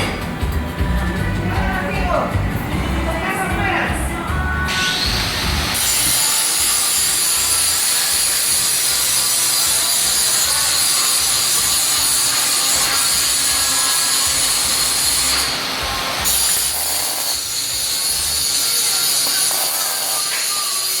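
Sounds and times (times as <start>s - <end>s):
power tool grinding metal: 4.7s - 21.0s.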